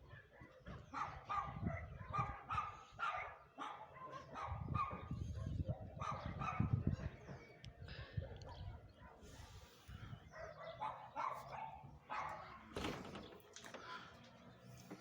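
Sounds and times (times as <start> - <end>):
dog barking: 0.0 - 7.1, 10.3 - 12.7.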